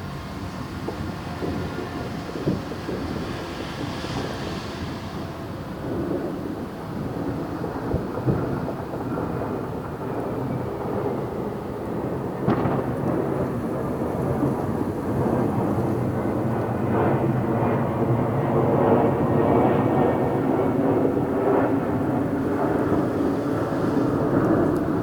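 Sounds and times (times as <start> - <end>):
distant fireworks rumble: 0.2 - 25.0
sharp firework bang: 12.4 - 15.5.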